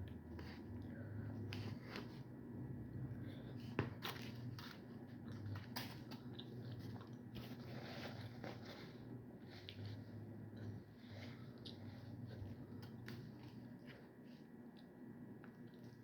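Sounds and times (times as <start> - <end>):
person chewing: 4.0 - 14.0.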